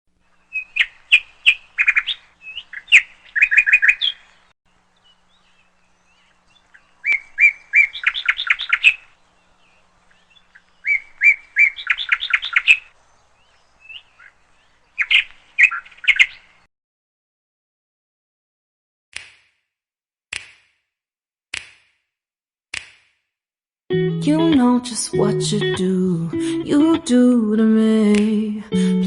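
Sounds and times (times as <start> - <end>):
songbird singing: 0.1 - 16.7.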